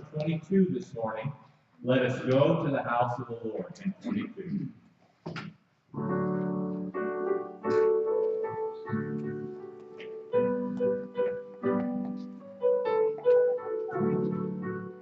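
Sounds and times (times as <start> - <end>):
piano playing slow hymn chords: 6.0 - 15.0.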